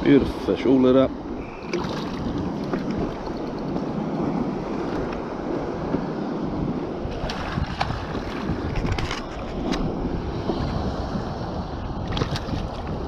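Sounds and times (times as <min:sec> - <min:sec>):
wind buffeting microphone: 0:00.0 - 0:13.0
water sloshing against kayak: 0:01.3 - 0:13.0.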